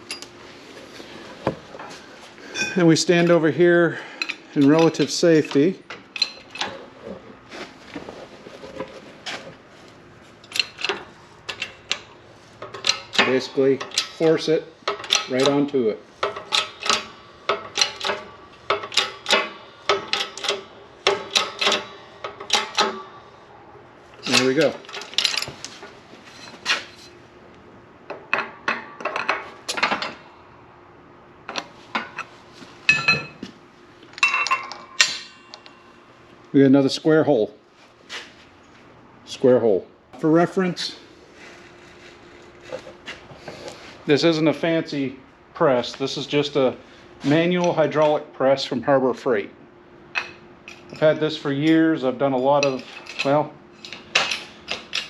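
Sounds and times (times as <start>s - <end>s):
metal parts clinking: 0.0s - 0.4s, 4.2s - 6.8s, 10.4s - 23.1s, 24.2s - 27.2s, 34.1s - 35.9s, 52.4s - 55.0s
hydraulic press clicking and knocking: 10.4s - 23.1s.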